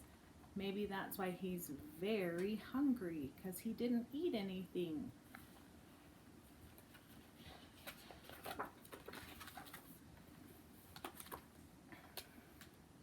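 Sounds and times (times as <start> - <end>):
paper rustling: 6.5 - 12.7.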